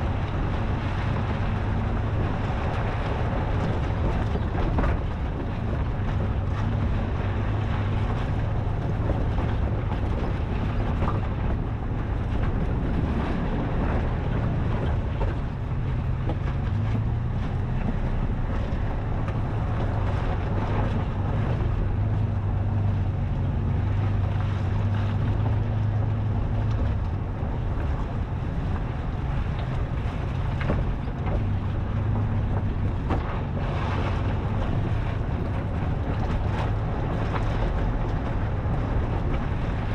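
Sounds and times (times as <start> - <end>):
vehicle engine droning: 0.0 - 39.9
wind noise on microphone: 0.0 - 39.9.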